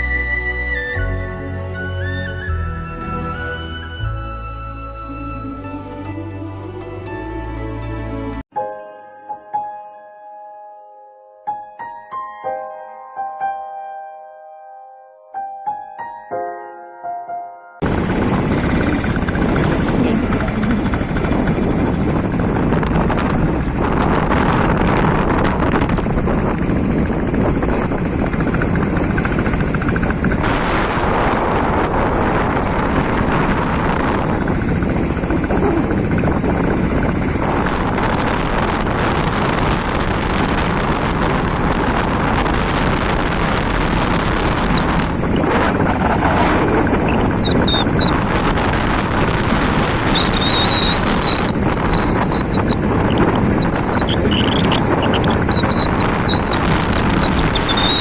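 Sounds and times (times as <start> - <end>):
vehicle rumble: 17.8 - 58.0
wind buffeting microphone: 17.8 - 58.0
high whistle-like chirps: 50.1 - 58.0.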